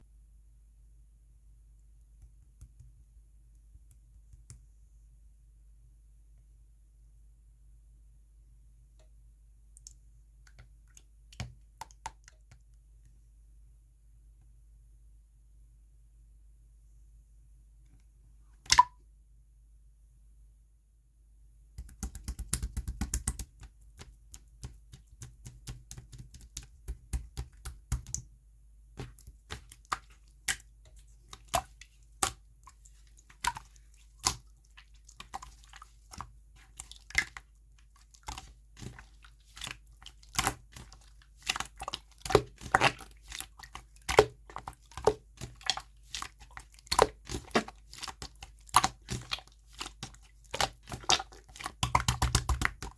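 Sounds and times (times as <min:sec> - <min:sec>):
slime squishing with sticky pops: 0:21.8 - 0:28.3, 0:29.0 - 0:52.9.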